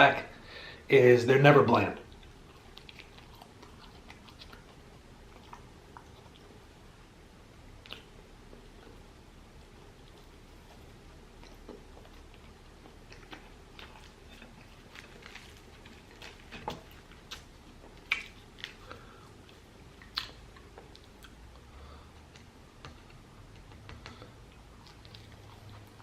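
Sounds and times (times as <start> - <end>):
person chewing food: 2.0 - 26.0
mouth clicks and smacks: 7.8 - 9.0, 16.6 - 18.9, 20.0 - 21.4.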